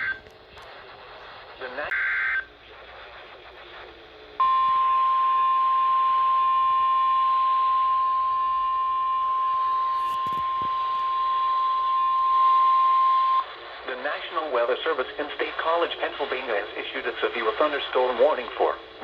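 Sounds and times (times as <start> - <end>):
steady alarm beep: 4.4 - 13.4.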